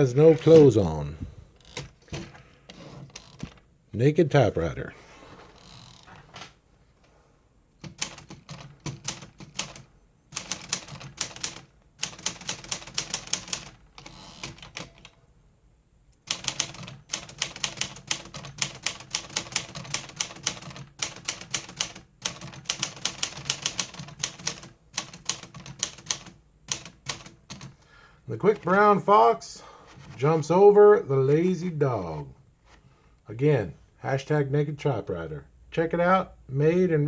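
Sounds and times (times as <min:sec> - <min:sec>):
manual typewriter typing: 0:07.8 - 0:15.2, 0:16.2 - 0:27.8.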